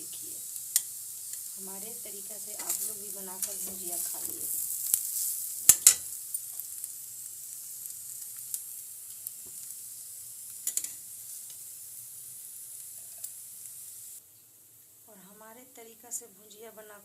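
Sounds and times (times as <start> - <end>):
potatoes sizzling in oil: 0.0 - 17.0.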